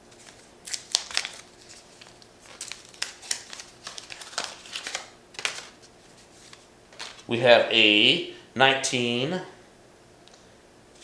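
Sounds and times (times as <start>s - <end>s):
wax paper tearing and crinkling: 0.1s - 7.3s.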